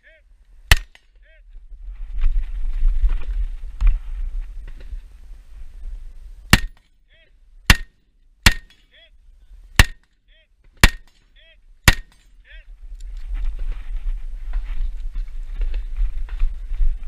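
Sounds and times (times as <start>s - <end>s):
rifle shots: 0.7s - 1.1s, 6.5s - 6.8s, 7.7s - 8.9s, 9.8s - 10.0s, 10.8s - 11.2s, 11.8s - 12.3s.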